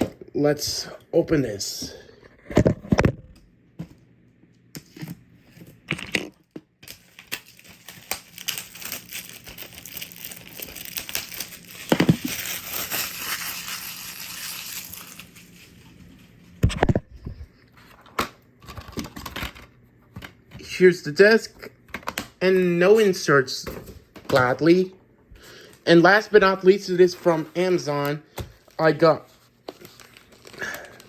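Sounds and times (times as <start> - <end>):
plastic crinkling and crackling: 6.1 - 16.8, 28.5 - 31.0.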